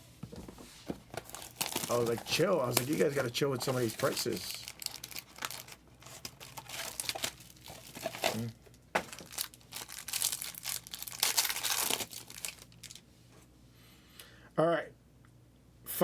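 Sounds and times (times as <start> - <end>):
plastic wrappers tearing and crinkling: 1.1 - 13.0.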